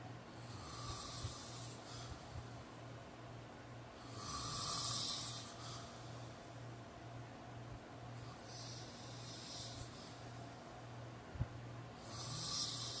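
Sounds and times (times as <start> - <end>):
man snoring: 0.4 - 2.1, 4.0 - 5.8, 12.0 - 13.0.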